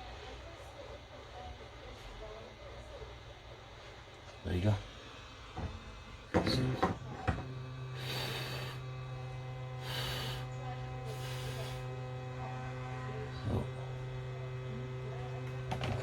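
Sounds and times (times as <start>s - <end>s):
steady electrical hum: 0.0s - 16.0s.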